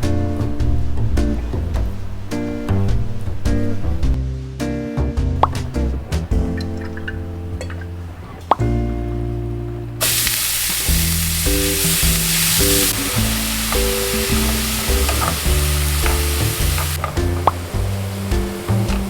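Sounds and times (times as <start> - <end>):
background music: 0.0 - 19.0
food sizzling in a hot pan: 10.0 - 19.0.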